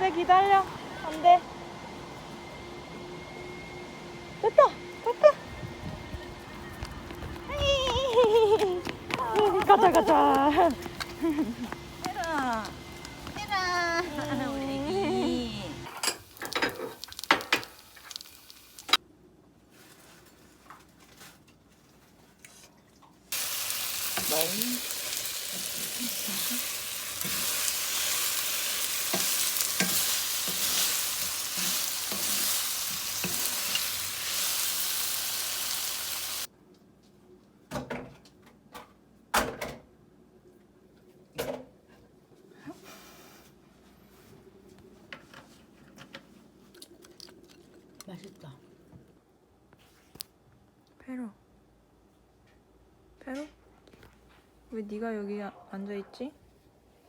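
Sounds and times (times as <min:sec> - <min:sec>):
food sizzling in oil: 0:12.9 - 0:19.0, 0:23.3 - 0:36.5.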